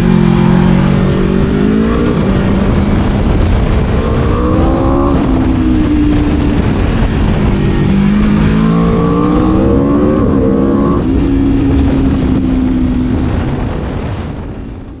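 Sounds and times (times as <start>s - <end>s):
motorcycle engine revving: 0.0s - 14.3s.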